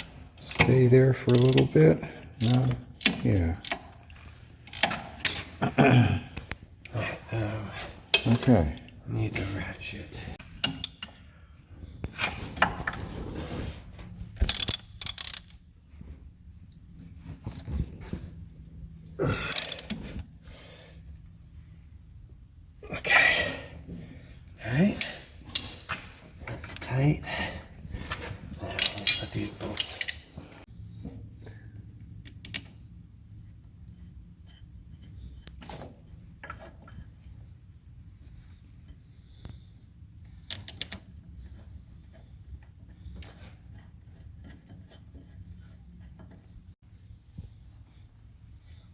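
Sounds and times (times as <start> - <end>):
metallic clinks of tools and bolts: 2.4 - 4.1, 4.7 - 5.5, 10.4 - 11.3, 14.4 - 15.6, 19.4 - 20.0, 24.4 - 27.4, 28.6 - 30.6
metal hand tools clinking: 24.8 - 26.9, 28.6 - 30.6.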